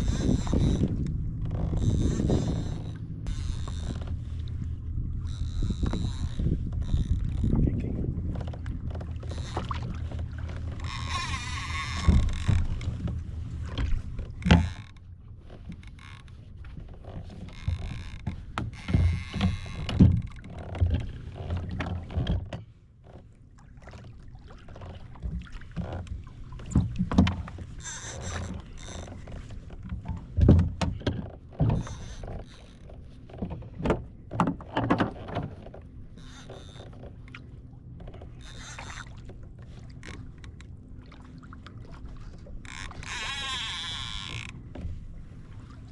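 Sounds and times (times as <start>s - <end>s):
water splashing against hull: 0.0s - 45.9s
knocks on boat: 11.8s - 14.9s, 17.4s - 22.7s, 25.0s - 27.6s, 28.3s - 32.4s, 33.4s - 35.8s.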